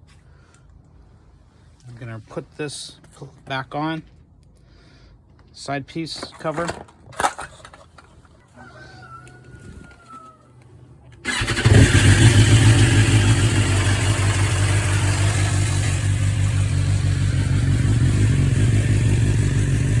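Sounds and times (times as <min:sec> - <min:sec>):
motorcycle engine starting and idling: 0:11.1 - 0:20.0.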